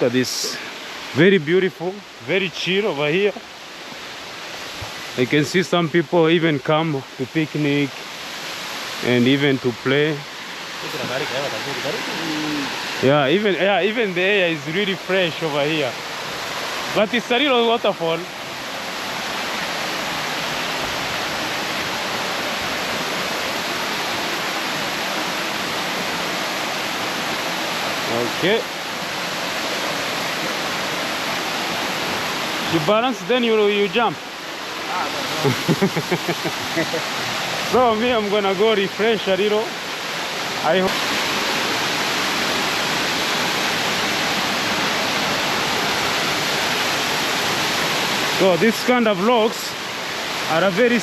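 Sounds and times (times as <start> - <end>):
small waterfall splashing: 0.0 - 51.0.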